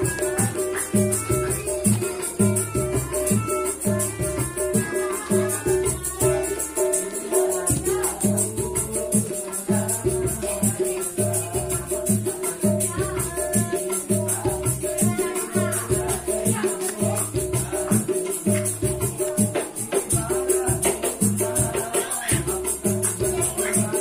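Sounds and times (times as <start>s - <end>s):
melodica notes: 0.0s - 8.2s
steady drum beat: 0.0s - 24.0s.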